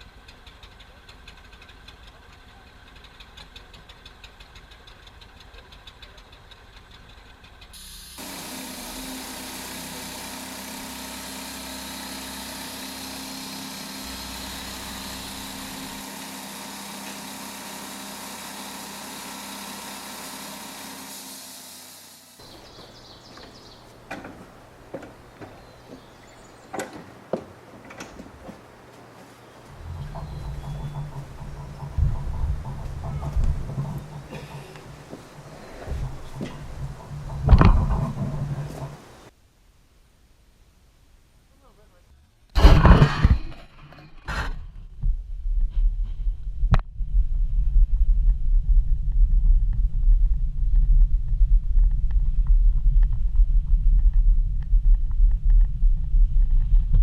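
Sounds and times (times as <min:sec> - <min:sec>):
sawmill engine running: 0:00.0 - 0:39.3
saw blade cutting log: 0:07.8 - 0:22.7, 0:29.7 - 0:39.3.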